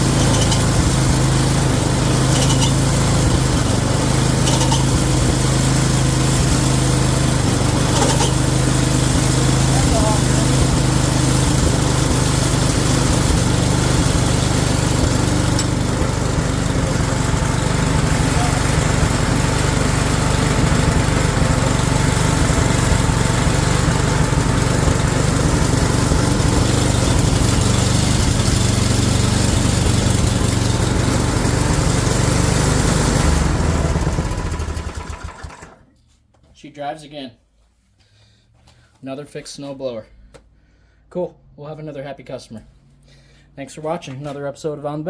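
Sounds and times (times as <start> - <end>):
snowblower engine running: 0.0 - 35.9.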